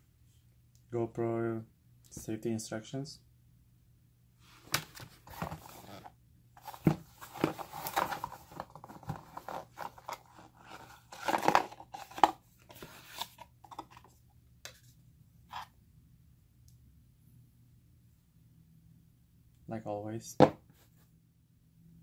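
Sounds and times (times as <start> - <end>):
packaging rustling and crinkling: 4.6 - 13.4.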